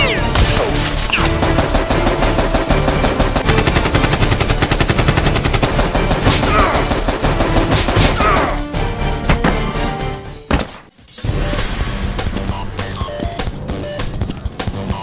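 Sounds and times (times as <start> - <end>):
background music: 0.0 - 15.0
rapid machine-gun fire: 1.1 - 8.6.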